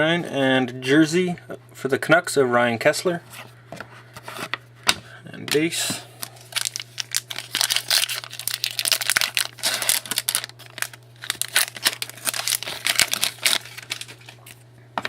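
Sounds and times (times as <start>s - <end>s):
steady low hum: 0.0s - 15.0s
wrapper crinkling and tearing: 6.2s - 14.6s.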